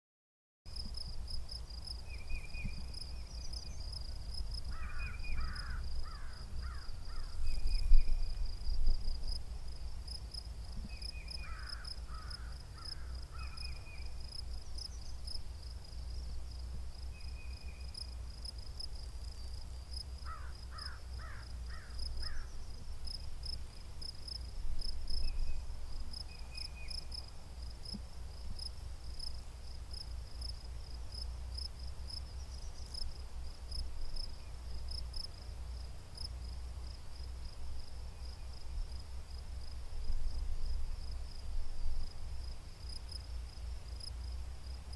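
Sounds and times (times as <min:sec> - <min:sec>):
insects chorus: 0:00.8 - 0:44.9
crow cawing: 0:04.7 - 0:07.3, 0:11.4 - 0:13.6, 0:20.2 - 0:22.5.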